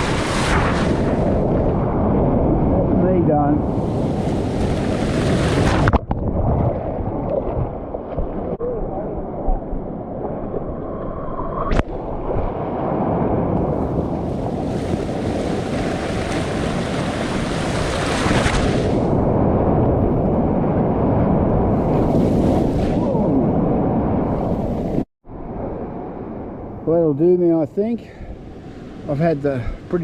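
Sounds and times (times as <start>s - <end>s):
ocean water rushing and churning: 0.0s - 30.0s.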